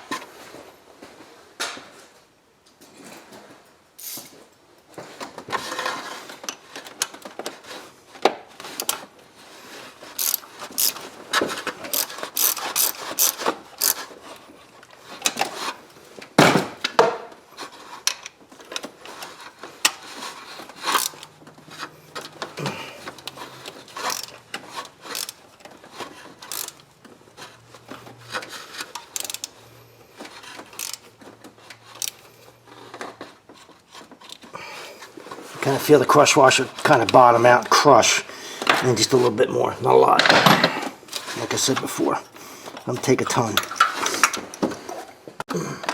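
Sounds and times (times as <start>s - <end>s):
ratchet clicking: 4.0s - 4.3s, 10.2s - 11.0s, 11.9s - 14.1s, 24.0s - 24.4s, 25.1s - 25.4s, 26.4s - 26.8s, 29.1s - 29.5s, 30.7s - 31.0s
tools clicking and scraping: 4.0s - 4.4s, 5.1s - 9.1s, 9.7s - 16.3s, 17.6s - 45.9s.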